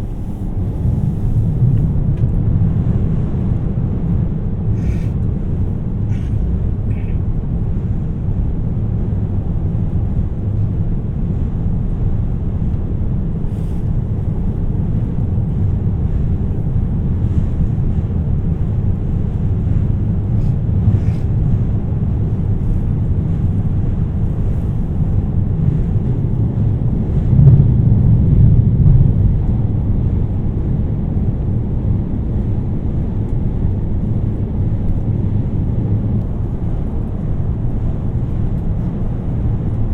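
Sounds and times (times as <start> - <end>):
train running rumble on board: 0.0 - 39.9.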